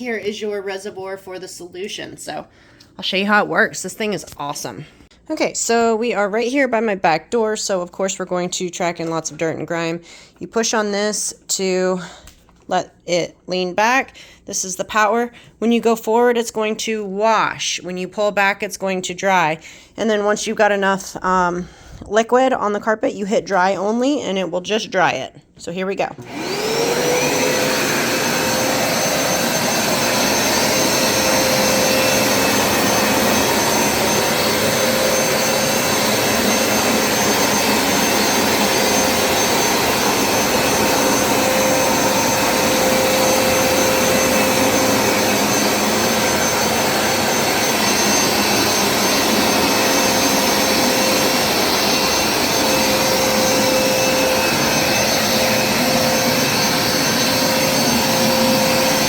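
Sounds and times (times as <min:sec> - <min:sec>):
carpet cleaner motor whine: 0:26.2 - 0:59.0.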